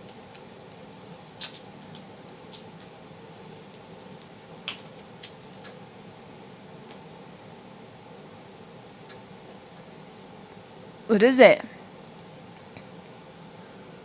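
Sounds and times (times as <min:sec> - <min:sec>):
plastic wrapper crinkling: 0:01.2 - 0:05.8
scissors snipping plastic: 0:01.2 - 0:05.8.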